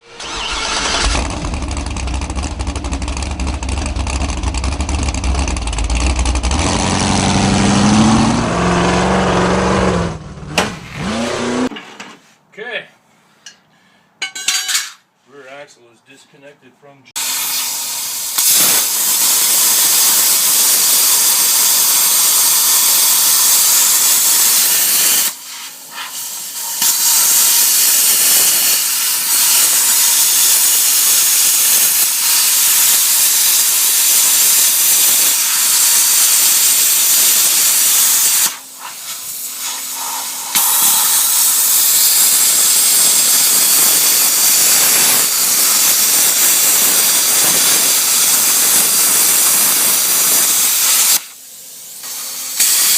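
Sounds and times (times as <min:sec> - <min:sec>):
compressed air hissing: 0:17.2 - 0:52.9.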